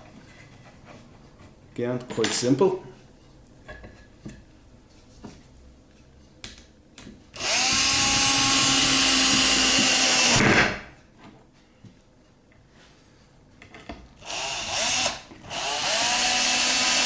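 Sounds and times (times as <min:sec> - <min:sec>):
power drill driving screw: 0:07.4 - 0:10.6, 0:14.2 - 0:17.0.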